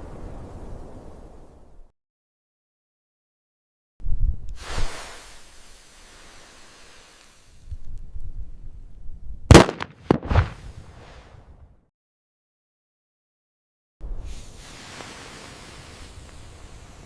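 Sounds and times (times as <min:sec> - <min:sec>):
long hissing rush: 0:04.6 - 0:07.7, 0:14.3 - 0:17.0
explosion boom: 0:09.5 - 0:10.6
sharp cracks: 0:09.5 - 0:10.7.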